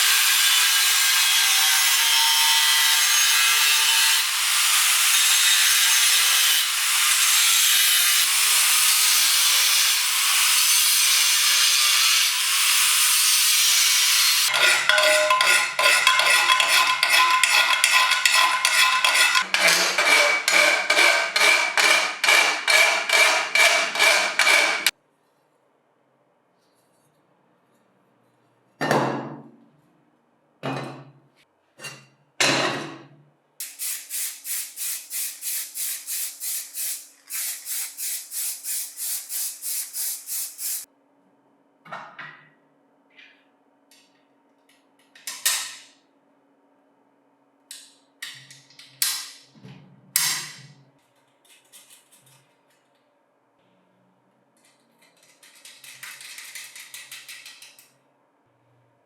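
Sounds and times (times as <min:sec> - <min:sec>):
rasping filing strokes: 0:13.6 - 0:24.9
scrapes: 0:14.5 - 0:25.5.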